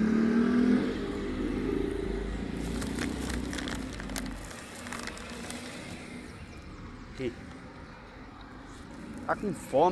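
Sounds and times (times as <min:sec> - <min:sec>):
passing vehicle engine: 0:00.0 - 0:07.1
sharp crackling clicks: 0:02.7 - 0:06.0.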